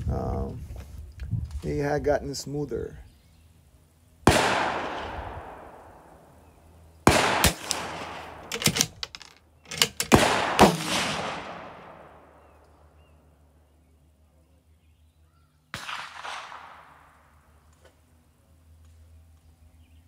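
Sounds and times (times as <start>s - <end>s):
rifle shots echoing: 4.2s - 6.4s, 7.0s - 9.0s, 9.7s - 12.6s, 15.7s - 17.6s
rifle bolt clicks and knocks: 8.4s - 10.2s.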